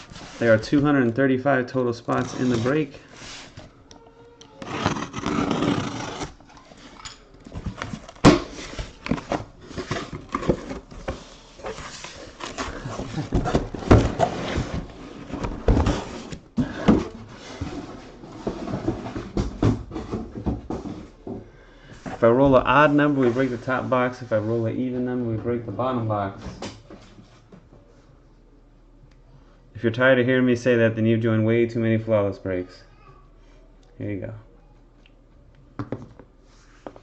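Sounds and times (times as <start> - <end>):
rustling and handling noises: 0.0 - 25.6.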